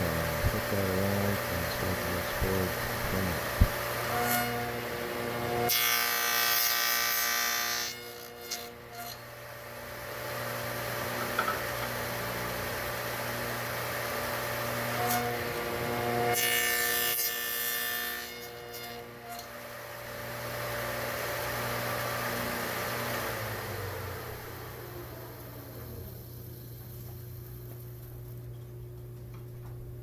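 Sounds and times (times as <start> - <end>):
table saw cutting wood: 0.0 - 9.3, 14.0 - 25.8.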